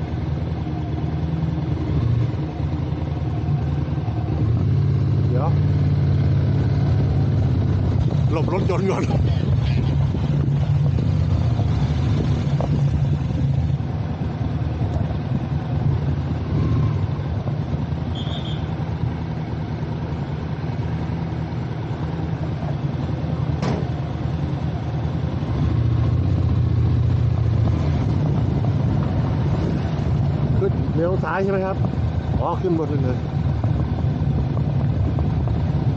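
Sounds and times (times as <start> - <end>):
motorcycle engine running: 0.0 - 35.9
road noise: 0.0 - 35.9.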